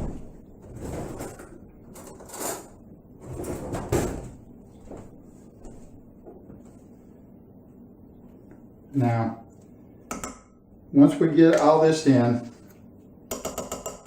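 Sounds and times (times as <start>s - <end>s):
kitchen utensils scraping and knocking: 0.6s - 4.3s.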